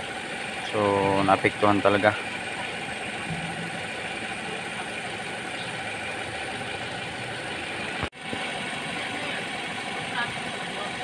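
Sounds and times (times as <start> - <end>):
car engine idling: 0.0 - 11.0
coolant bubbling: 0.0 - 11.0.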